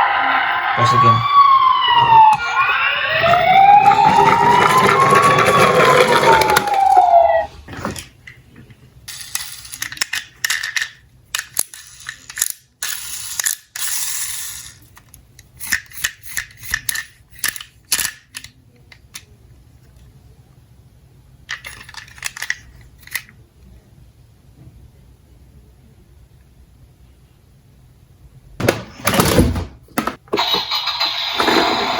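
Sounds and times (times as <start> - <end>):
siren wail: 0.0 - 7.6
toy cars clattering down a slope: 3.8 - 8.1, 9.1 - 18.5.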